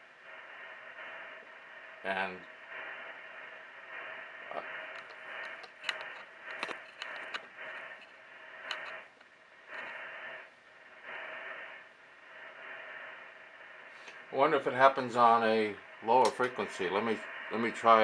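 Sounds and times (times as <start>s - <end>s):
radio receiver hiss: 0.0s - 18.0s
static crackles: 0.0s - 18.0s.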